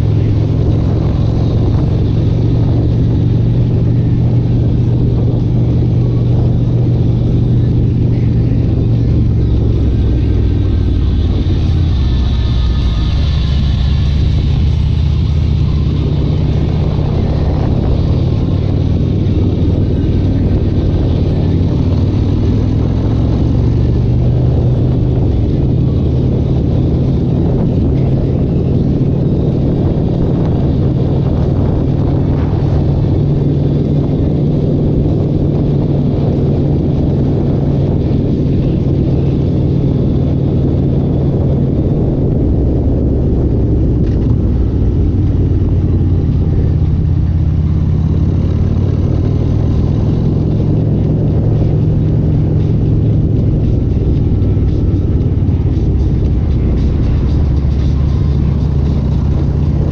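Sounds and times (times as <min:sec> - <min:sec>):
car engine running: 0:00.0 - 0:59.9.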